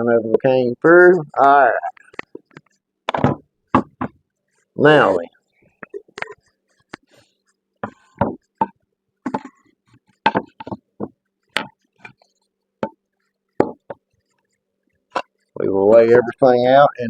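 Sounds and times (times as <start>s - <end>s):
wooden pieces knocking on workbench: 3.1s - 4.2s, 7.8s - 9.5s, 10.2s - 11.8s, 13.6s - 14.0s.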